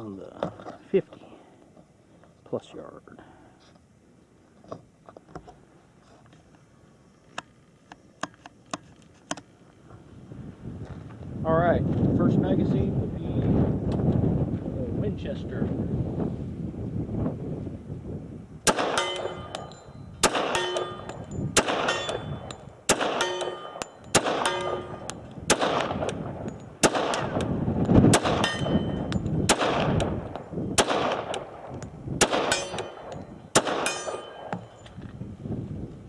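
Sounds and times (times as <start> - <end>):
pistol shots: 18.6 - 34.7
short metallic ring: 18.9 - 25.2, 28.4 - 29.3, 32.5 - 35.0.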